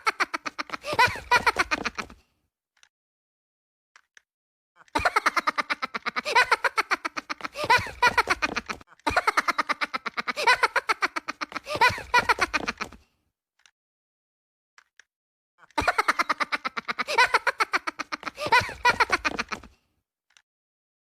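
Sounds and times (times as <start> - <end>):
high-pitched cartoon laughter: 0.0 - 2.2, 4.8 - 13.0, 15.6 - 19.7.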